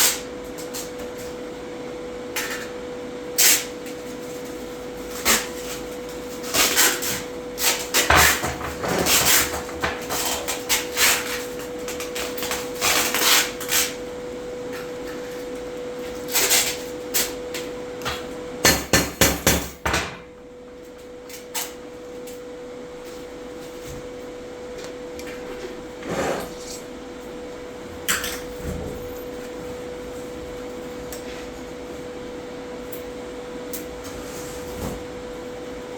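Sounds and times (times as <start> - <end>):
hammer strikes on metal: 18.6 - 20.2.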